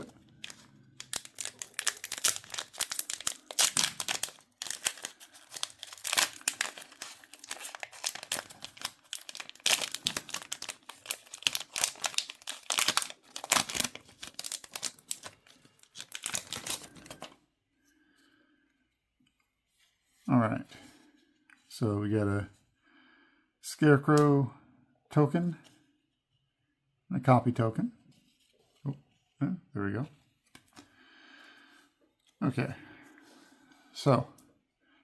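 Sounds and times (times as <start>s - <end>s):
foil wrapper tearing and crinkling: 0.0s - 17.3s.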